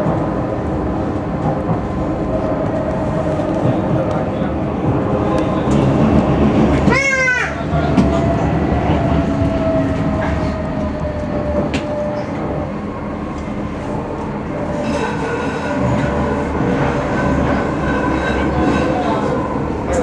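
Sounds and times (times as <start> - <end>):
train rumbling along track: 0.0 - 20.0
train motor whine: 13.4 - 20.0.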